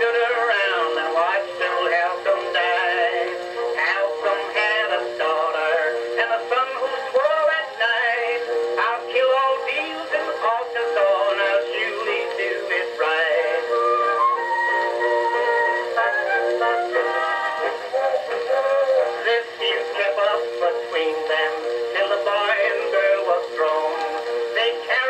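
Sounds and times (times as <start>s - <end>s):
man singing: 0.0s - 25.0s
orchestra accompaniment: 13.8s - 18.4s.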